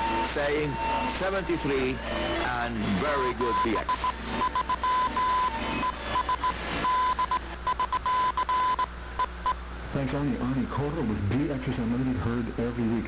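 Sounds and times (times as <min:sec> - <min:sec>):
radio hiss: 0:00.0 - 0:04.4
morse code beeps: 0:03.0 - 0:09.6.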